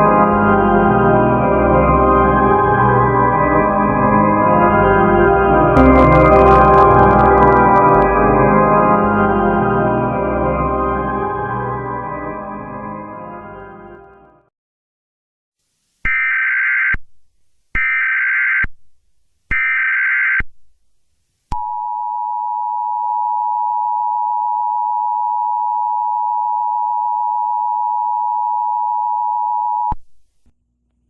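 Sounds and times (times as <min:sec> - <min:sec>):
data header tone bursts: 0:05.8 - 0:08.2
steady two-tone attention signal: 0:05.8 - 0:09.9.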